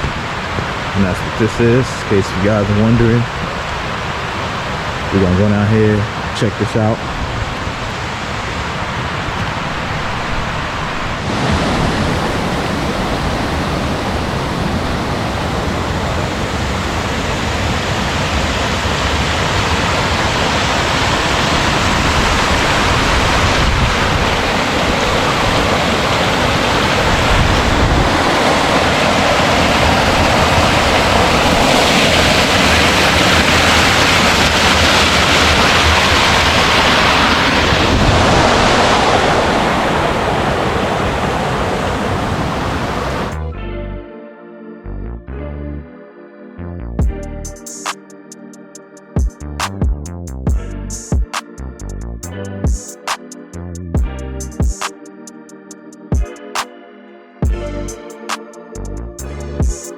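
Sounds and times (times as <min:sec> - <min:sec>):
rushing water: 0:00.0 - 0:43.4.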